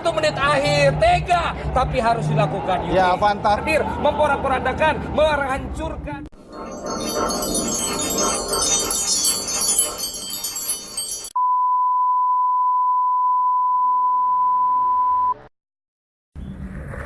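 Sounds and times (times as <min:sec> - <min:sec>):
tinkling chime-like music: 0:06.4 - 0:11.4.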